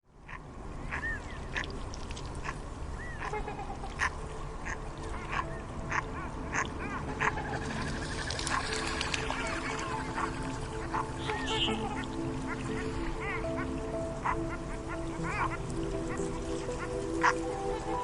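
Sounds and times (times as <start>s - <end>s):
ducks quacking: 0.2s - 1.8s, 2.4s - 18.0s
high peeps: 9.4s - 14.6s.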